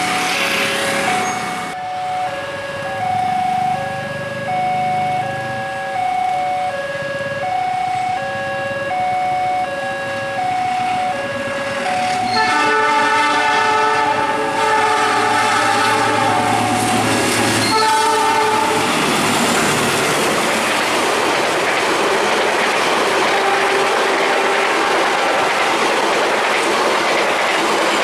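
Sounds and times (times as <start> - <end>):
level crossing two-tone alarm: 0.0 - 20.6
train air horn blast: 12.0 - 19.0, 23.2 - 25.6.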